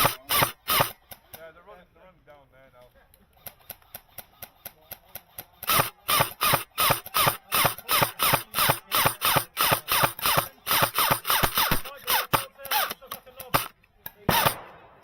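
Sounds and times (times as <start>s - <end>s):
airsoft gun firing single shots: 0.0s - 1.2s, 5.6s - 15.0s.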